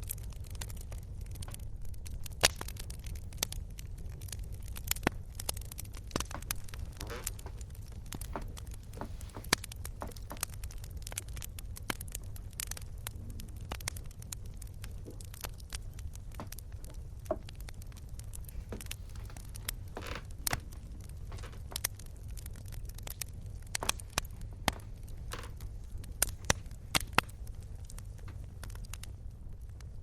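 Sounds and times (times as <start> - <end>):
campfire crackling and popping: 0.0 - 30.0
low fire rumble: 0.0 - 30.0.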